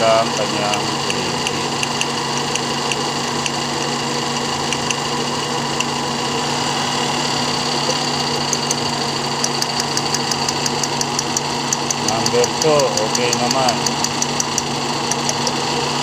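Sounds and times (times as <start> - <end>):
engine idling and misfiring: 0.0 - 16.0
sharp ticks: 0.6 - 3.6, 4.7 - 5.0, 5.8 - 6.0, 8.4 - 15.6.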